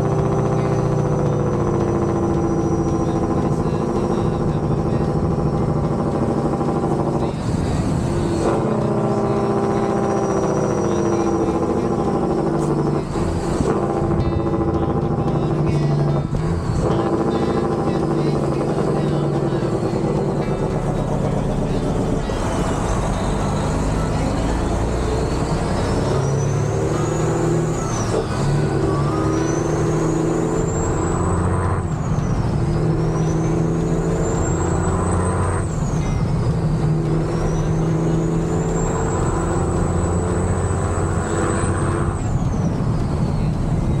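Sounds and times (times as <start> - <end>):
diesel truck engine accelerating: 0.0 - 44.0
turbo whistle: 9.2 - 13.0, 18.6 - 43.3.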